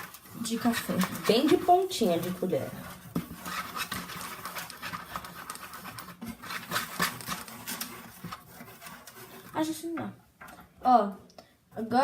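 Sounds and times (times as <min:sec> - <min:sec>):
spoon stirring in a cup: 0:00.0 - 0:09.6.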